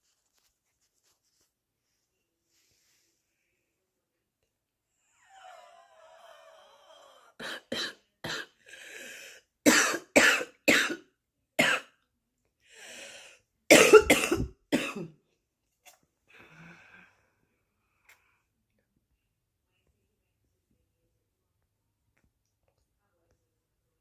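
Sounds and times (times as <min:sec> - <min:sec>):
woman coughing: 0:07.4 - 0:08.6, 0:09.7 - 0:11.0, 0:13.7 - 0:15.2
noisy breaths drawn in: 0:08.6 - 0:09.5, 0:12.7 - 0:13.5.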